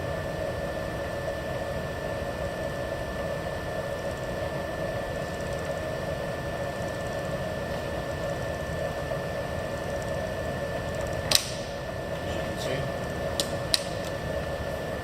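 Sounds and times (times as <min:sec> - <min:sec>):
milling machine humming with whine: 0:00.0 - 0:15.0
sharp click: 0:11.0 - 0:11.7, 0:13.4 - 0:14.2.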